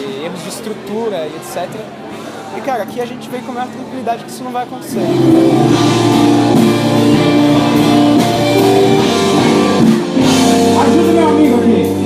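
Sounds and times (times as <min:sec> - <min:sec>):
drums: 0:04.8 - 0:12.0
electric guitars: 0:04.8 - 0:12.0.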